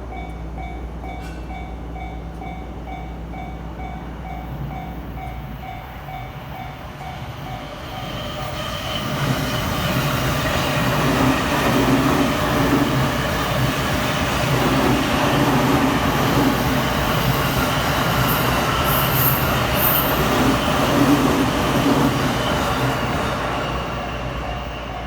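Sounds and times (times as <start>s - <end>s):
train wheels rumbling on rails: 0.0s - 25.0s
high-pitched wheel squeals: 18.2s - 20.3s.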